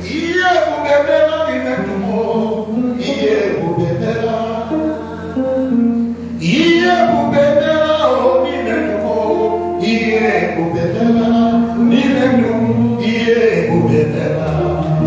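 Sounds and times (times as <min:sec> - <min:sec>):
instrumental accompaniment: 0:00.0 - 0:15.0
person singing long notes: 0:00.0 - 0:15.0.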